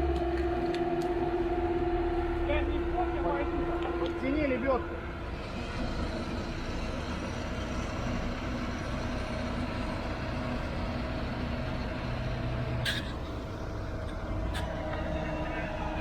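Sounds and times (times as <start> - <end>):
vehicle engine humming: 0.0 - 16.0.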